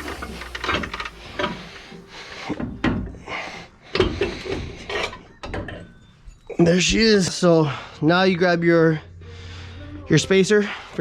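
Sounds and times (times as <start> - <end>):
metal parts scraping: 0.0 - 1.7.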